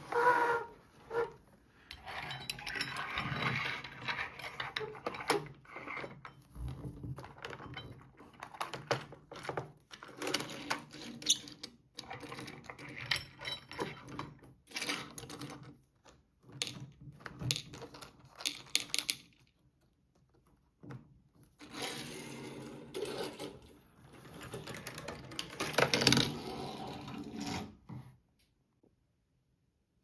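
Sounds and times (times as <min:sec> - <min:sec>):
plastic toy parts clicking and rattling: 0:07.1 - 0:19.7.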